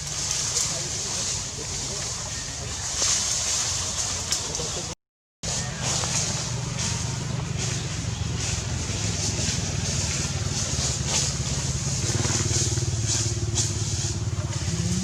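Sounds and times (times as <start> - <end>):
engine running at low revs: 5.4 - 15.0.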